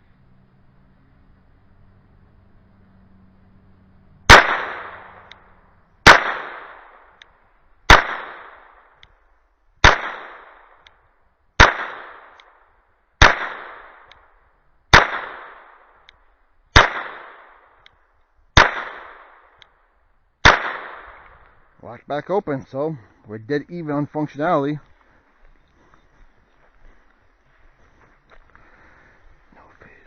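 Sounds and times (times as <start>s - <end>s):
rifle shots echoing: 4.3s - 5.4s, 6.0s - 7.2s, 7.9s - 9.0s, 9.8s - 10.8s, 11.6s - 12.6s, 13.2s - 14.1s, 14.9s - 16.0s, 16.7s - 17.8s, 18.6s - 19.6s, 20.4s - 21.4s.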